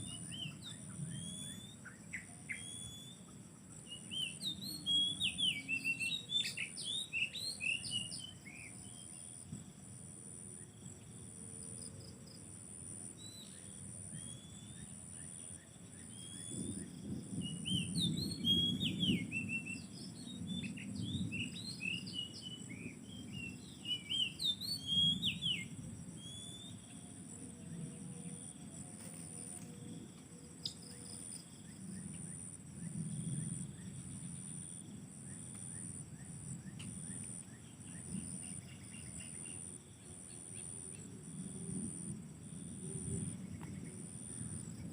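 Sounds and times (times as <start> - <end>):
bird singing whistled phrases: 0.0 - 3.2, 3.9 - 8.4, 17.4 - 26.8.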